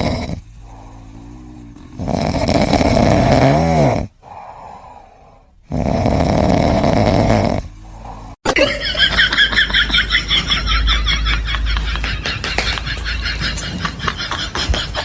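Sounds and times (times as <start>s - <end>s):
quiet breath: 0.0s - 2.2s, 4.1s - 5.7s, 7.6s - 8.4s
pet snoring: 0.0s - 8.4s.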